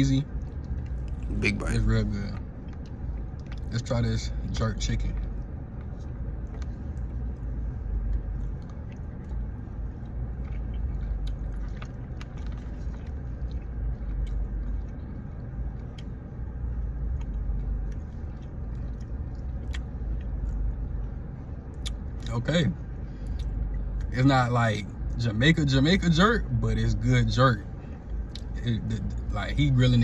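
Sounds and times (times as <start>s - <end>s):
steady low rumble: 0.0s - 30.0s
person biting and chewing: 10.0s - 15.2s, 17.1s - 20.7s.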